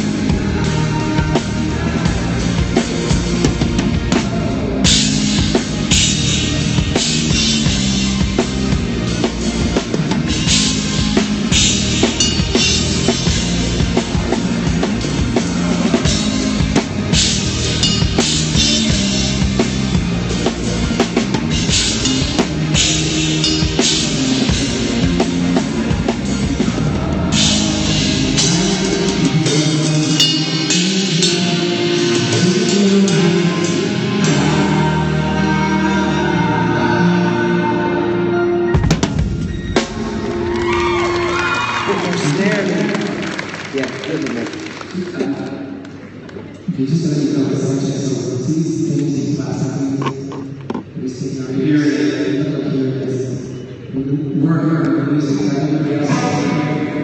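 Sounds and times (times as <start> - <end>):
bass drum: 0.0 - 31.5
rock band playing live: 0.0 - 44.9
crashing cymbals: 10.3 - 15.5, 16.1 - 26.5, 30.0 - 32.4.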